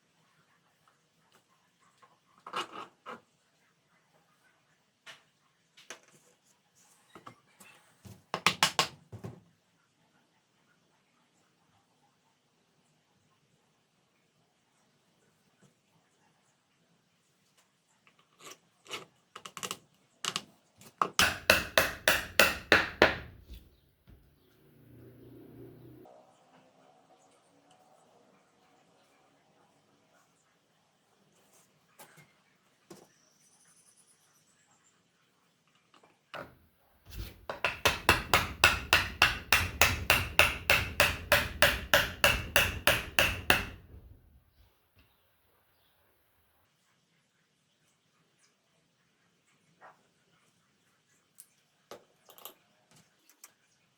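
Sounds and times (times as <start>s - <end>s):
hammer knocks: 21.2s - 24.3s, 36.4s - 44.4s.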